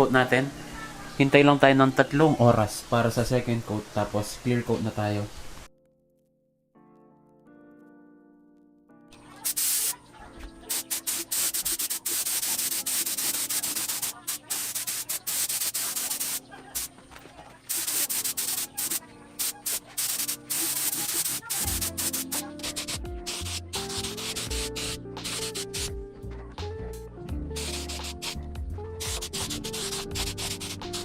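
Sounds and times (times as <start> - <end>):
background music: 5.8 - 31.0
paint spraying hiss: 9.2 - 17.0, 17.6 - 26.0, 27.6 - 28.4, 29.0 - 31.0
bass beat: 20.7 - 31.0.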